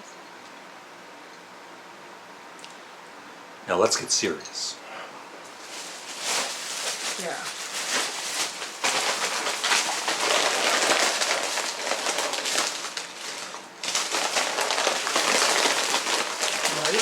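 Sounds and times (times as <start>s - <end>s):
plastic packaging crinkling: 5.5s - 17.0s.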